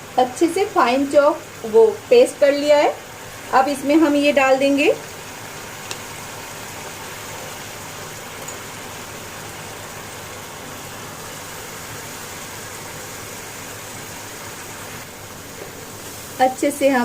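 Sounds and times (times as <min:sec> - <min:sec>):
gravy sizzling in a pan: 0:00.0 - 0:17.0.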